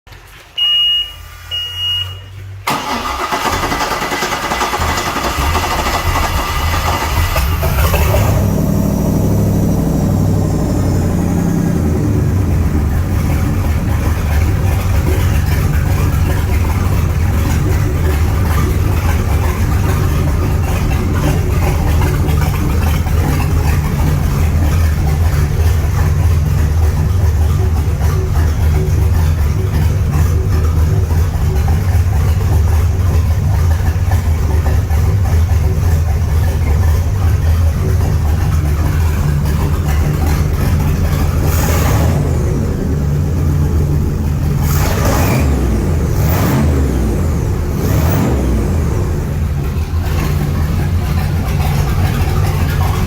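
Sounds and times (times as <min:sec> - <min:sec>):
short beeps: 0:00.6 - 0:02.5
boat engine idling: 0:02.2 - 0:45.0, 0:48.5 - 0:53.0
starter cranking engine: 0:02.6 - 0:08.9, 0:12.3 - 0:53.0.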